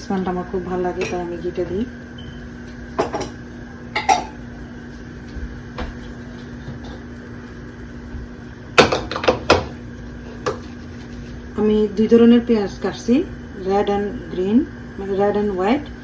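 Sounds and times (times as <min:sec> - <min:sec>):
steady low hum: 0:00.0 - 0:16.0
utensils clinking on cookware: 0:04.0 - 0:04.4.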